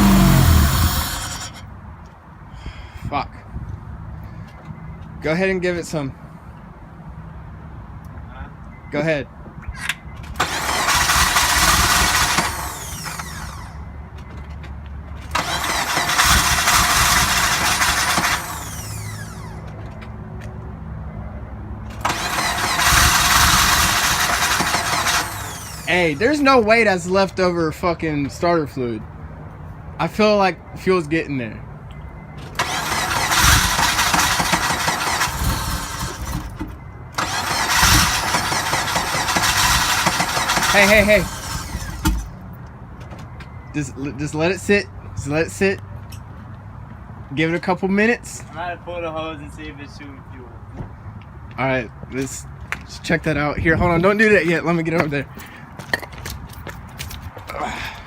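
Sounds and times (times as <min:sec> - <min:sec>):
car engine starting and revving: 0:00.0 - 0:01.7, 0:10.4 - 0:13.8, 0:15.3 - 0:19.7, 0:22.0 - 0:26.3, 0:32.6 - 0:36.6, 0:37.2 - 0:42.3.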